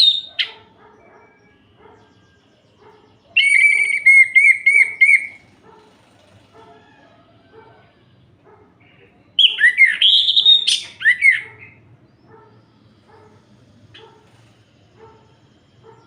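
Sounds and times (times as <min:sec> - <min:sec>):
thrush singing whistles: 0:03.4 - 0:05.4, 0:09.4 - 0:11.5.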